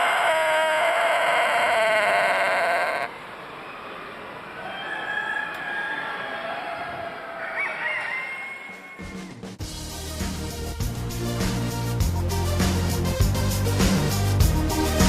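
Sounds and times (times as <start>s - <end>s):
rooster crowing: 0.0s - 3.2s, 4.6s - 9.2s.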